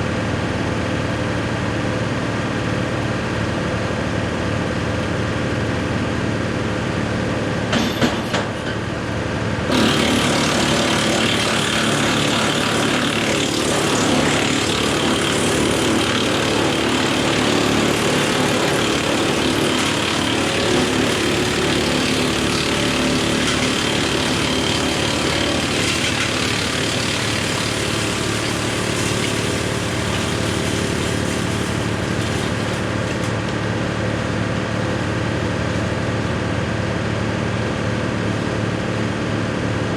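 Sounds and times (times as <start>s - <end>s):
diesel tractor running: 0.0s - 39.9s
wood chipper hissing whirr: 0.0s - 39.9s.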